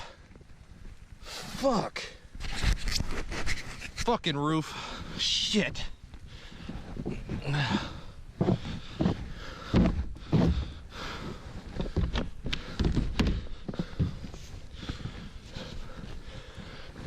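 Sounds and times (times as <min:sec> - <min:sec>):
thuds and knocks: 0:06.6 - 0:10.8, 0:11.8 - 0:14.3.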